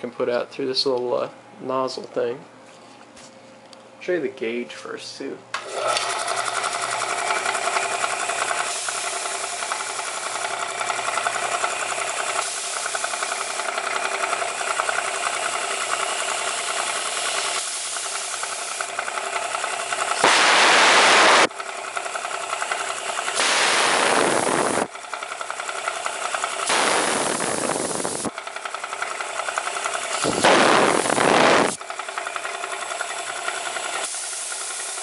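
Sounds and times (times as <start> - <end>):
piston air compressor chattering: 5.7 - 35.0
compressed air hissing from nozzle: 12.4 - 13.0, 17.3 - 18.9, 23.4 - 24.9, 26.6 - 28.3, 34.0 - 35.0.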